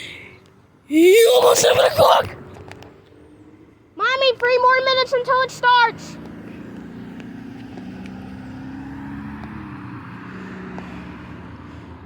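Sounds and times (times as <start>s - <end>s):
vehicle engine passing by: 6.1s - 11.7s.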